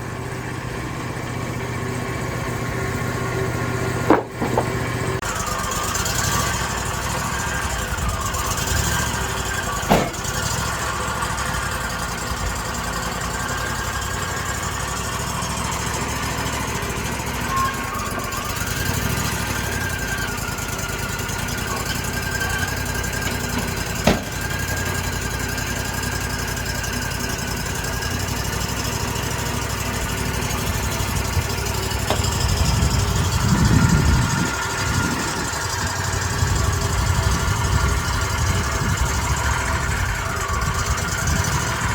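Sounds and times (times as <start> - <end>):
constant whine: 0.0 - 15.8
sawmill engine running: 0.0 - 41.9
sharp knocks: 4.1 - 4.9, 9.9 - 10.4, 23.6 - 24.5, 32.0 - 32.5.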